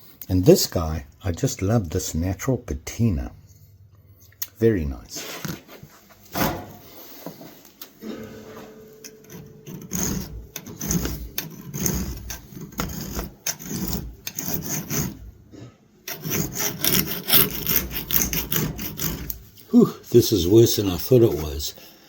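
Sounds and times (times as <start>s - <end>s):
knife blade grinding on abrasive: 8.9s - 15.4s, 16.0s - 19.5s.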